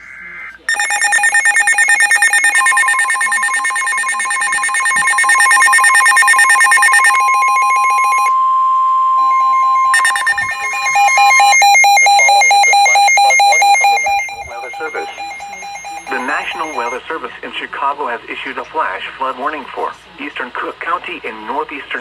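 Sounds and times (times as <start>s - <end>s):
rapid electronic beeping: 0.7s - 8.3s, 9.2s - 17.0s
steady warning alarm tone: 0.7s - 17.0s.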